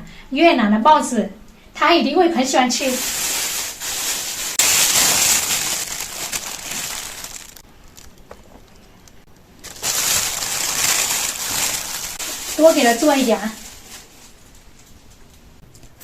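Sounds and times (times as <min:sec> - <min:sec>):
plastic bag crinkling: 0:02.8 - 0:09.0, 0:09.6 - 0:15.1.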